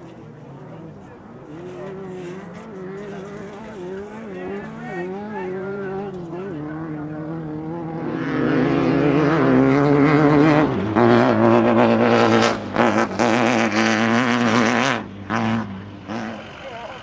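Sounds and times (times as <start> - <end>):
engine revving: 0.0 - 17.0.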